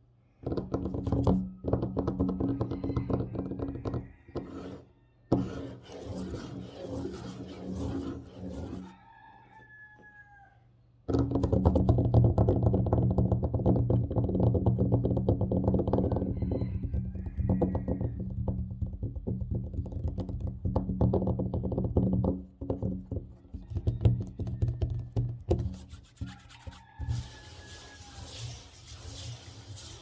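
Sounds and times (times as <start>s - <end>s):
fingernails tapping on a tabletop: 0.4s - 5.7s, 16.9s - 26.3s.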